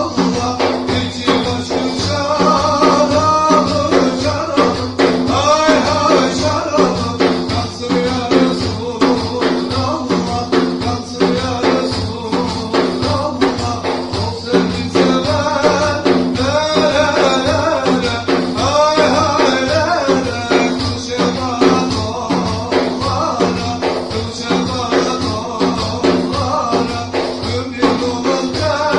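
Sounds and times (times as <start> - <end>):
fast percussion beat: 0.0 - 28.9
person singing: 0.0 - 28.9.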